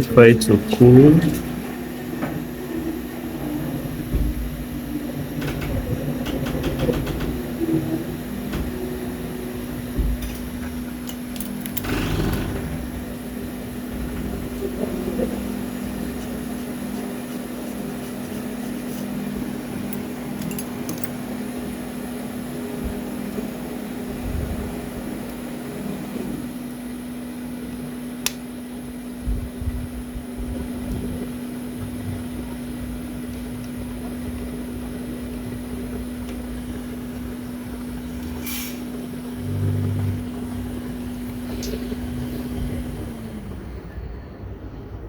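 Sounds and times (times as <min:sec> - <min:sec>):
fan motor humming: 0:00.0 - 0:45.0.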